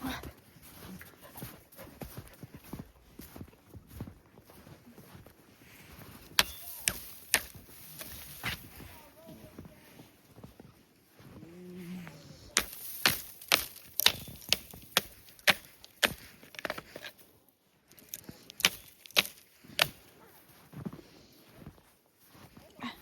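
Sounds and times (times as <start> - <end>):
footsteps crunching through snow: 0.0 - 23.0.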